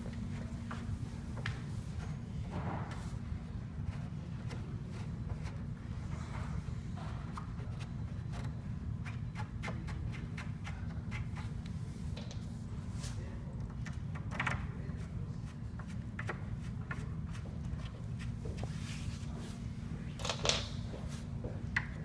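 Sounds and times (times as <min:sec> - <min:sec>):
knocks and clicks of wooden parts: 0:20.2 - 0:20.8.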